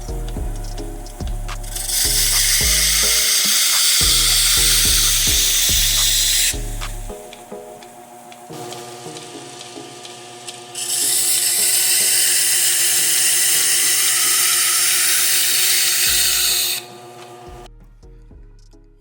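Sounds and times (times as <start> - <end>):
knife on power grinder hiss: 1.6 - 7.1, 10.8 - 17.5.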